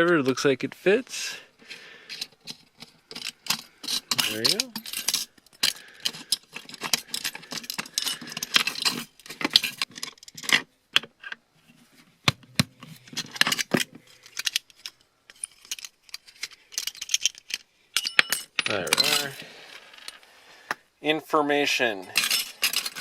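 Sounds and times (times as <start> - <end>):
hard drive parts clicking and rattling: 1.7 - 11.4.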